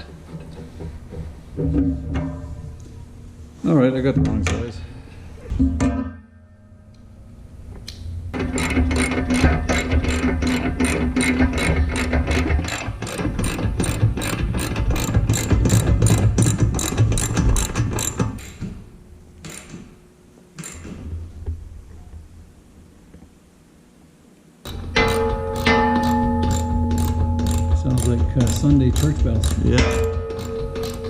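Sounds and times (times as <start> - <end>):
socket ratchet clicking: 7.9 - 18.5, 24.7 - 31.0.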